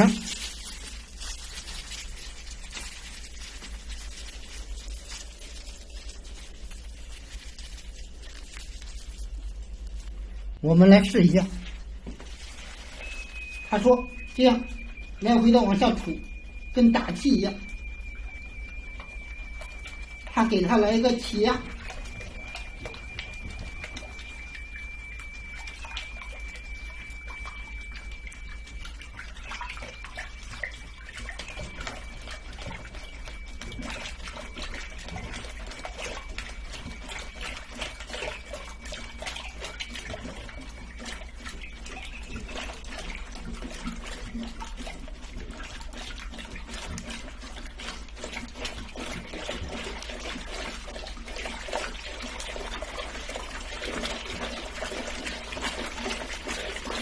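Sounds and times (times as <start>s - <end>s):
water sloshing in toilet bowl: 0.0s - 57.0s
faint steady high tone: 9.9s - 45.5s.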